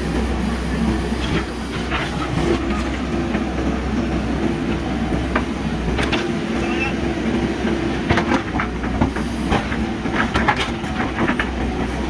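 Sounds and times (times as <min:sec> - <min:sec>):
diesel engine running under load: 0:00.0 - 0:12.0.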